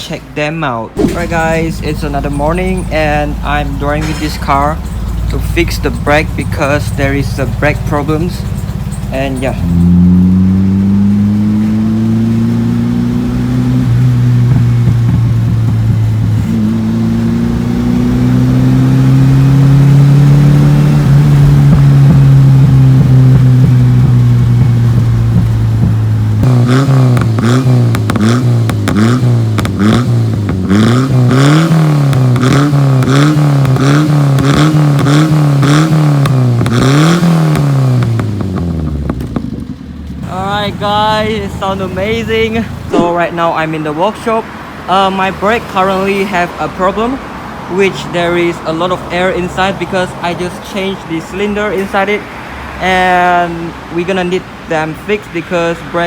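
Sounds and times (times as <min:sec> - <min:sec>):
car engine revving: 0:00.9 - 0:56.0
sharp exhaust pops: 0:01.0 - 0:43.2.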